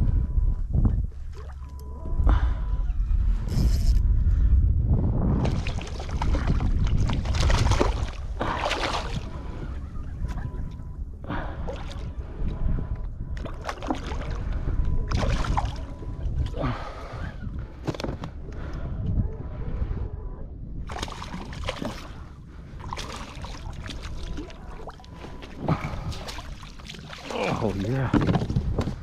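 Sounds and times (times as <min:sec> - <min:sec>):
low wind rumble on microphone: 0:00.0 - 0:29.0
water sloshing against kayak hull: 0:20.9 - 0:29.0.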